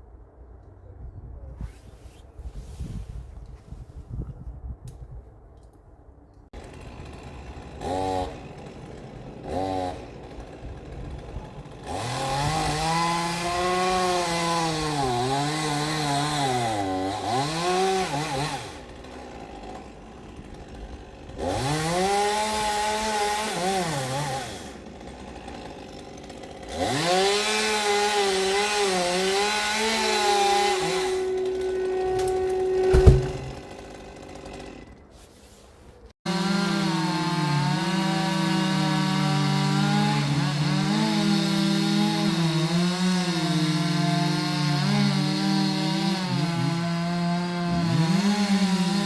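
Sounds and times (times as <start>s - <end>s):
chainsaw revving and cutting wood: 6.6s - 35.1s, 36.2s - 49.0s.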